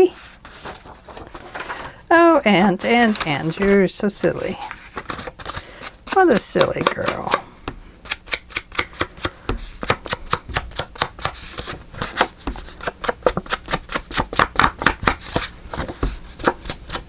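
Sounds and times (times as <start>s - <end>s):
tool tapping on paper: 6.3s - 11.4s, 12.1s - 17.0s.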